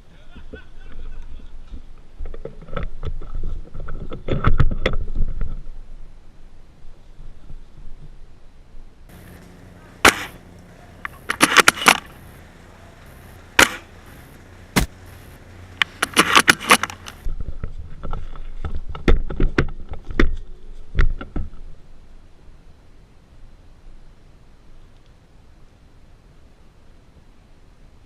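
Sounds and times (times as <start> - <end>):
airsoft gun shots: 9.1 - 17.3
gear scraping and rustling: 9.1 - 18.9.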